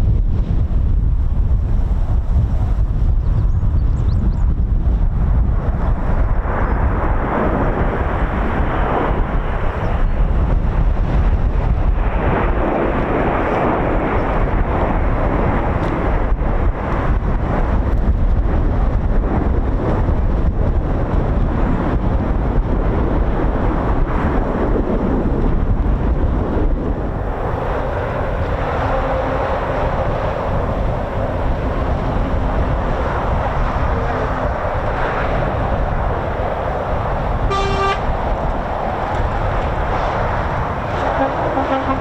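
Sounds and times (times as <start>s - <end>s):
jet aircraft noise: 0.0s - 42.0s
wind buffeting microphone: 0.0s - 42.0s
horn-like toot: 28.5s - 30.5s, 37.4s - 38.2s, 41.1s - 42.0s.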